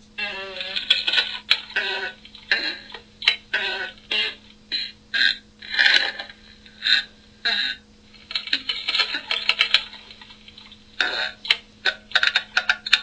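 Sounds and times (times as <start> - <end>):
fart sounds: 0.2 - 6.3, 11.0 - 12.3.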